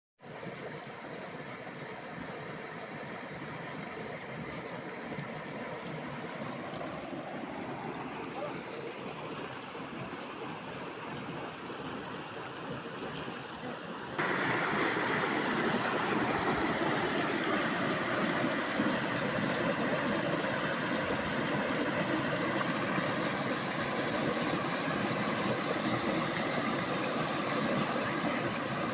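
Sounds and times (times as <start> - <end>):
river and waterfall rushing: 4.7 - 28.9.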